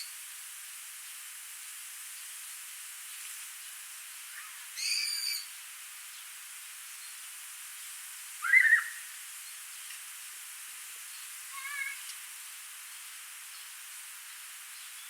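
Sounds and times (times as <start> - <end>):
bird buzzy call: 4.3 - 5.5, 8.4 - 9.1, 11.5 - 12.1
bird whistled call: 4.8 - 5.5, 8.4 - 9.0.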